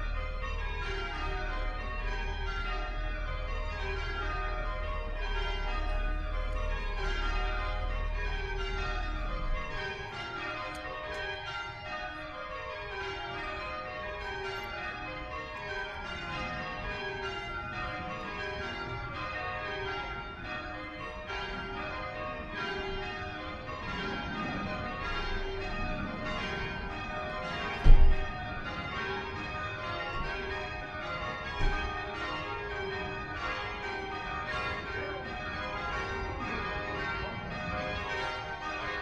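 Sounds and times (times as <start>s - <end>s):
church bells ringing: 0.0s - 39.0s.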